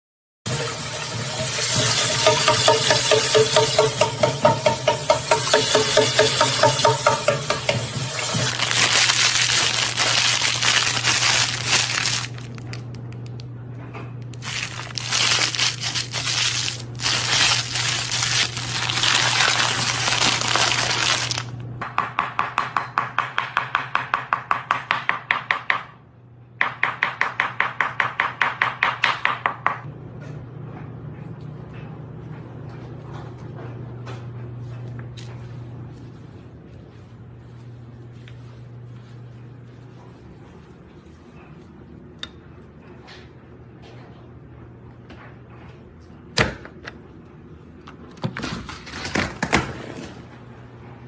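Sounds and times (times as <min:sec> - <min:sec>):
rustling crinkling noise: 0:08.2 - 0:13.1, 0:14.3 - 0:21.5, 0:34.8 - 0:41.8.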